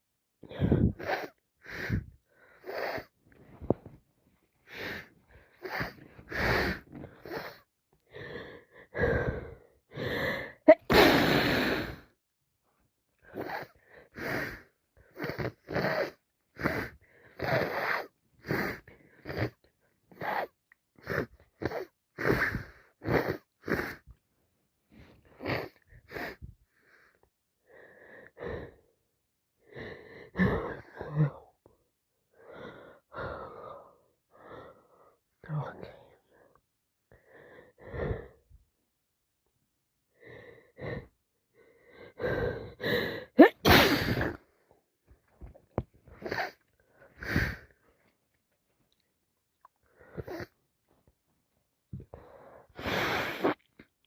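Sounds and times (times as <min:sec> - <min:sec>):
woman sneezing: 0:10.7 - 0:11.5, 0:43.4 - 0:44.4.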